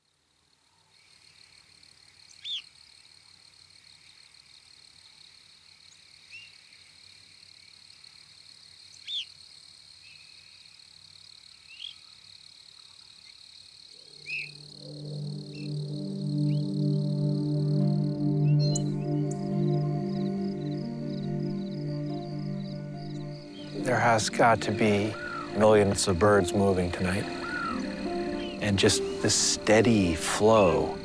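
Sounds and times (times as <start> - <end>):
crickets chirping: 0.0 - 31.0
sharp bird chirps: 14.0 - 23.8, 25.2 - 25.6, 27.2 - 29.3
low sustained music tones: 14.5 - 31.0.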